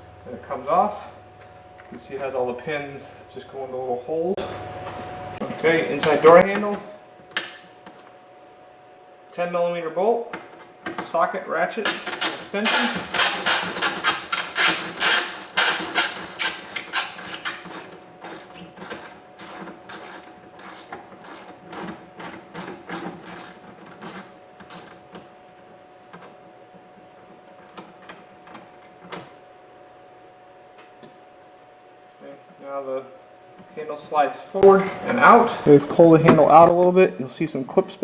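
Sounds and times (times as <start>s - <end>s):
hand ratchet clicking: 11.9s - 25.0s.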